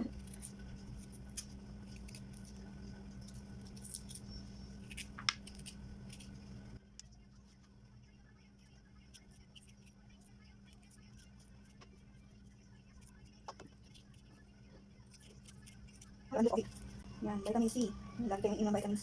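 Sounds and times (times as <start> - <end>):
ginger being peeled by hand: 0.0 - 6.7
steady low hum: 0.0 - 19.0.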